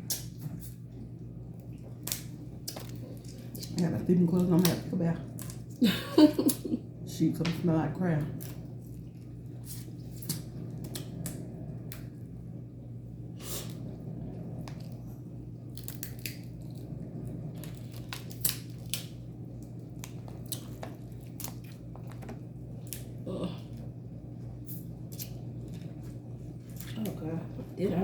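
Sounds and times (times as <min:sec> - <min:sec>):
chewing and wet mouth sounds: 0:00.0 - 0:05.8, 0:17.5 - 0:23.1
steady low hum: 0:00.0 - 0:28.0
crab shells cracking: 0:02.0 - 0:03.8, 0:15.7 - 0:16.8, 0:17.6 - 0:23.1.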